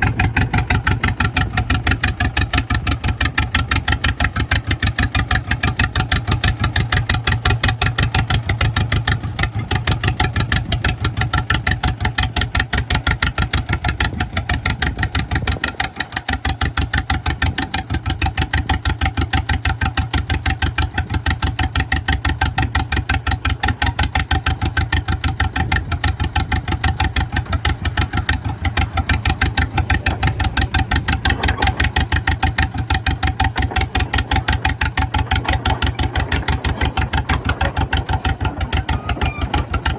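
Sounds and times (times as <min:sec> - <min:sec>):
two-cylinder engine running: 0:00.0 - 0:39.9.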